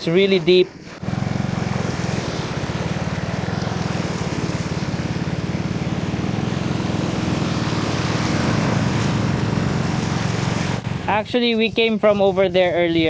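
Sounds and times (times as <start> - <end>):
motorcycle engine idling: 1.0 - 11.3.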